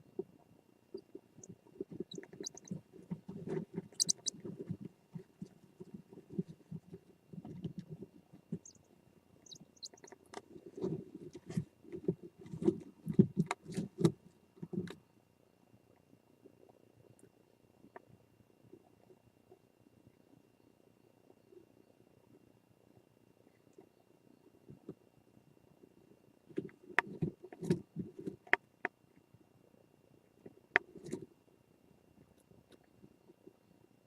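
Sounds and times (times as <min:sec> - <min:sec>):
faint high squeaks: 0:03.5 - 0:04.6.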